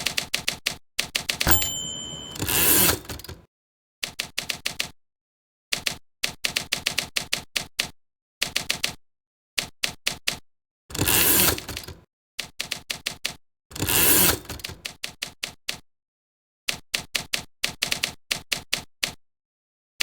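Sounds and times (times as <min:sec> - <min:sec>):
typewriter key strikes: 0:01.5 - 0:02.8.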